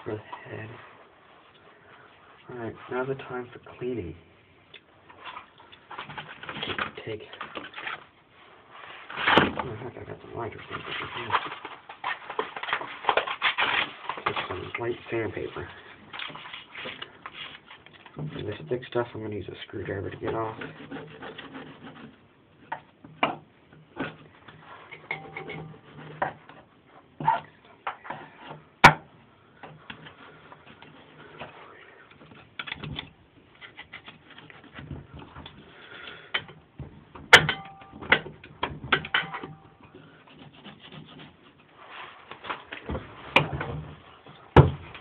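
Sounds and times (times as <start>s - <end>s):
scraping and rubbing on metal: 19.5s - 22.3s, 40.0s - 42.7s.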